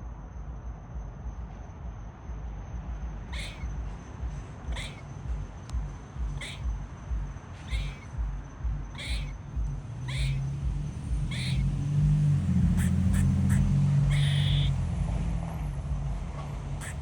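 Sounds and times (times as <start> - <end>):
squirrel barking: 3.3 - 3.7, 4.7 - 5.0, 6.3 - 6.7, 7.6 - 8.1, 8.8 - 9.4, 10.0 - 14.9, 16.8 - 17.0.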